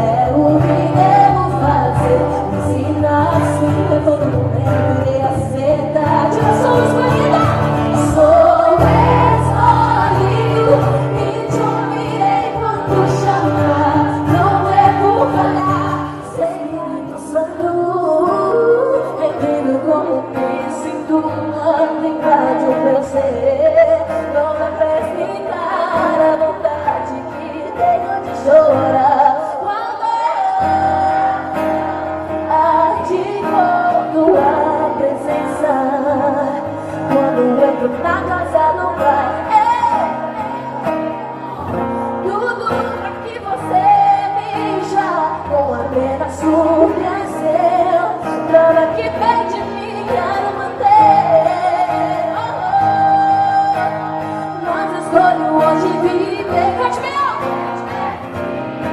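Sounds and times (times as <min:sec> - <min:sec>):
band with held bass notes: 0:00.0 - 0:29.6, 0:30.2 - 0:58.9
worship singing: 0:05.8 - 0:17.5.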